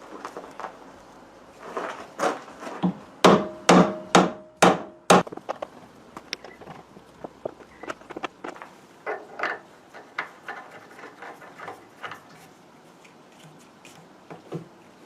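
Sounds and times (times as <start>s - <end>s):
hammer striking metal: 3.2s - 5.2s.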